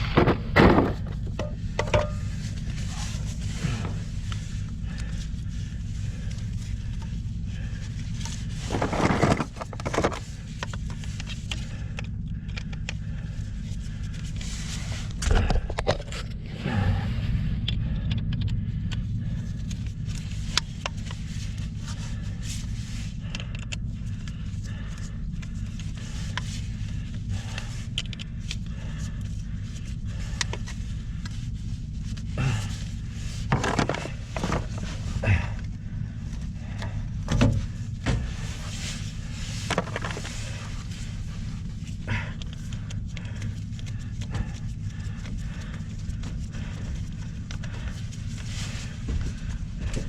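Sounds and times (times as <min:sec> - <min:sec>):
objects scraping and knocking: 0:00.0 - 0:02.3, 0:08.6 - 0:10.2, 0:33.4 - 0:35.0
steady low hum: 0:00.0 - 0:50.0.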